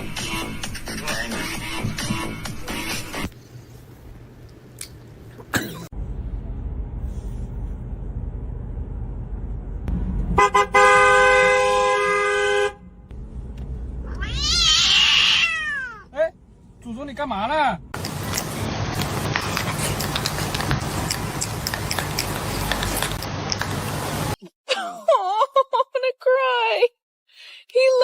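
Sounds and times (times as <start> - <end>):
low rumble: 6.0 - 10.4
car horn tooting: 10.4 - 13.0
cat meowing: 14.0 - 16.1.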